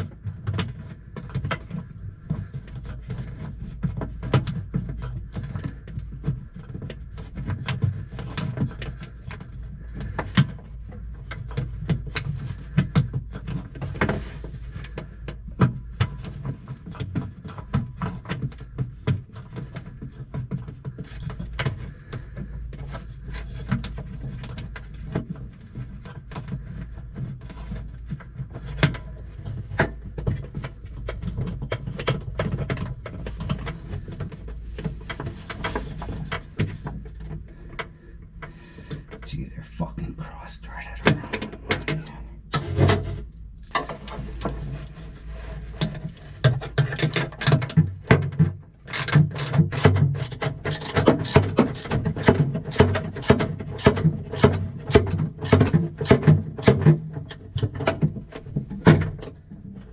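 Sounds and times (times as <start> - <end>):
steady low hum: 24.9 - 45.4
tools clicking on fittings: 48.9 - 57.8.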